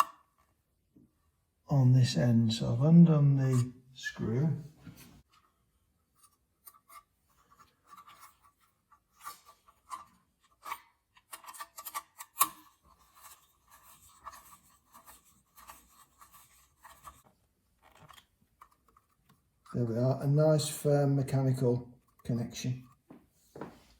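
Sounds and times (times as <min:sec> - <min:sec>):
metal scrapes and clicks: 0:06.6 - 0:17.2.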